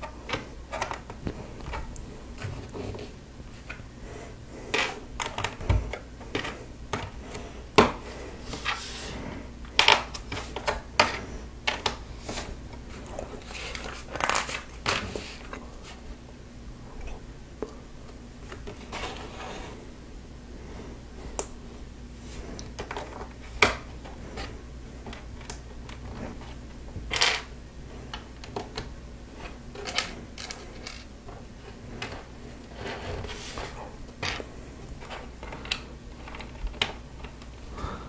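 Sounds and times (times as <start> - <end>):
plastic bricks clicking and clattering: 13.6 - 15.0, 29.8 - 31.1.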